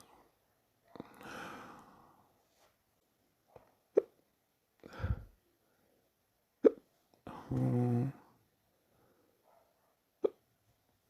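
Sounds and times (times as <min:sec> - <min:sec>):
low breathy sound: 0:00.0 - 0:02.6, 0:04.8 - 0:06.1
man hiccuping: 0:10.2 - 0:10.4.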